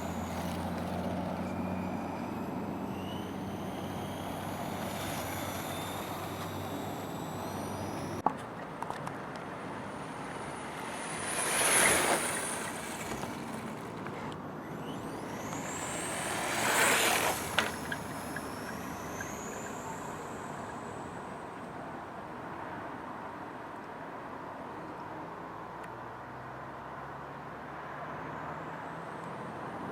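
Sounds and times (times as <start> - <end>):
rc car electric motor whining: 0.0 - 8.2, 9.4 - 21.8.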